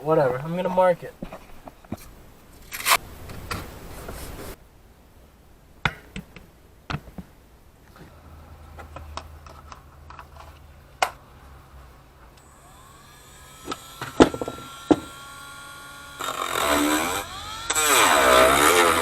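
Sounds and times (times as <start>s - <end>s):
rotary tool whining: 11.5s - 19.0s
rotary tool cutting panel: 12.3s - 19.0s.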